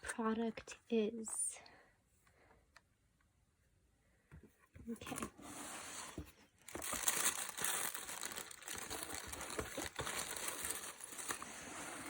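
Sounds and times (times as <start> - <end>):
packaging crinkling and rustling: 6.6 - 12.0.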